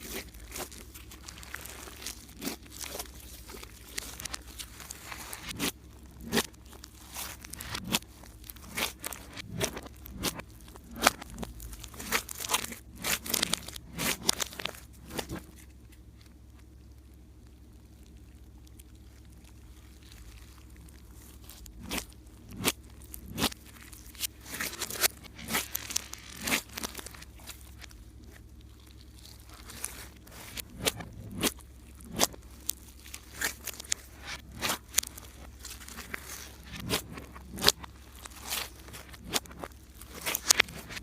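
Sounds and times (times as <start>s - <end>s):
faint low hum: 0.0s - 41.0s
slime squishing and popping: 0.0s - 41.0s.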